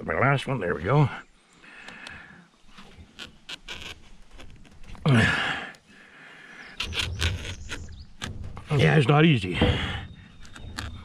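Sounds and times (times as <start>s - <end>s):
knife scraping cable sheathing: 2.6s - 5.0s, 6.7s - 8.5s, 10.4s - 11.0s
person grunting: 5.1s - 5.6s.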